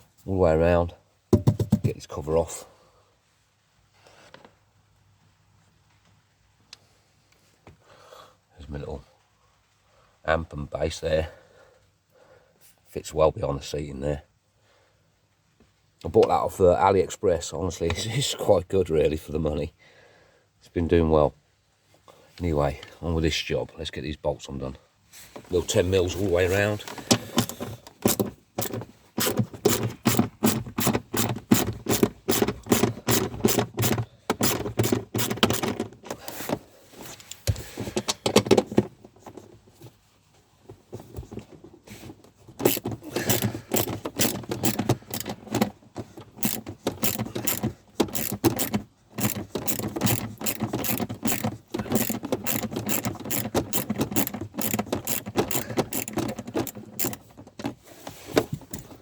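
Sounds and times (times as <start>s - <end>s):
hand ratchet clicking: 27.1s - 36.4s, 42.6s - 45.7s, 46.3s - 57.3s, 58.7s - 59.0s.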